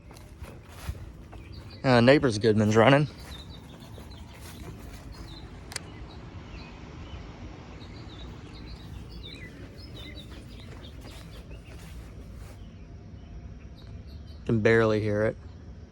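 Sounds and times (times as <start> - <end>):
birds chirping: 0.0 - 15.1
air conditioner unit hum: 0.0 - 15.9.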